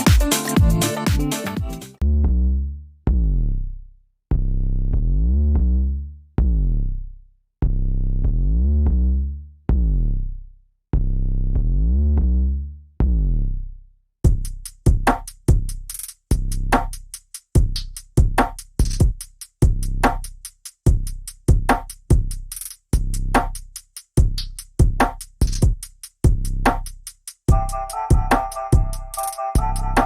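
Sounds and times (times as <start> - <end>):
drum machine beat: 0.0 - 2.0, 14.2 - 30.0
deep synth bass notes: 0.0 - 13.7, 27.5 - 30.0.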